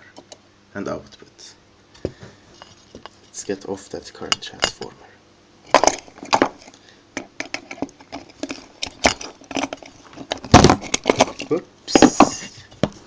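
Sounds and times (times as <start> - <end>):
hand tools clicking and scraping: 5.7 - 13.0.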